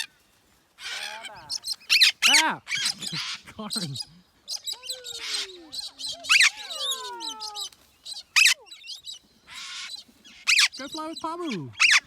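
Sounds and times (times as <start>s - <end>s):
parrots whistling and chirping: 4.5s - 12.0s.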